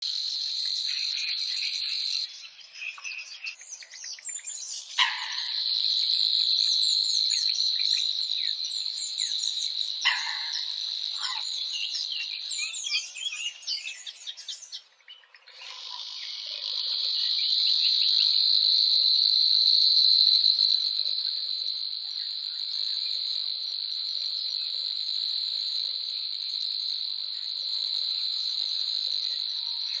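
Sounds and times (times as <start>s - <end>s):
insects trilling: 0.0s - 30.0s
small birds chirping: 0.0s - 30.0s.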